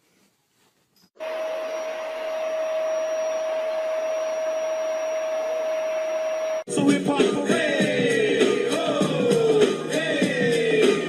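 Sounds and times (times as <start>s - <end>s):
appliance motor humming: 1.2s - 6.7s.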